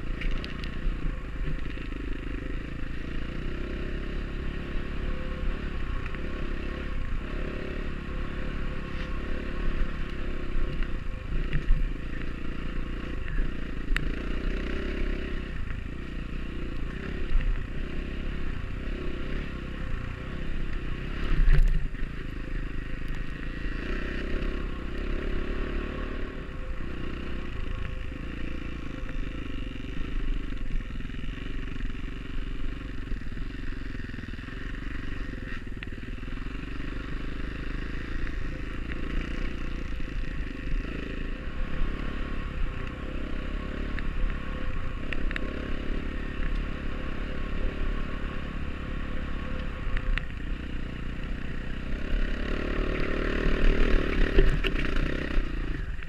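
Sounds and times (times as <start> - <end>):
dirt bike engine revving: 50.5 - 55.9.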